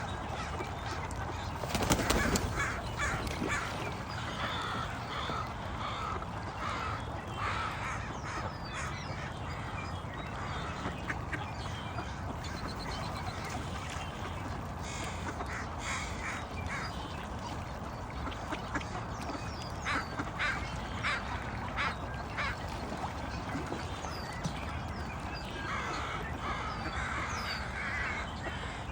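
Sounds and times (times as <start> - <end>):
ducks quacking: 0.3 - 9.8.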